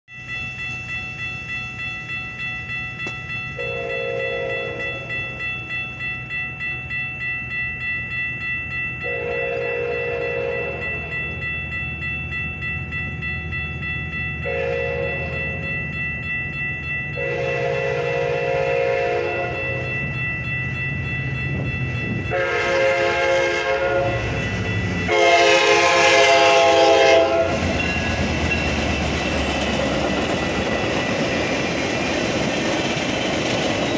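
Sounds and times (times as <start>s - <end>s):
crossing warning bell dinging: 0.1s - 33.9s
train rumble: 0.1s - 33.9s
train horn blasts: 3.6s - 4.8s, 9.1s - 11.0s, 14.4s - 15.7s, 17.2s - 19.8s, 22.2s - 27.8s.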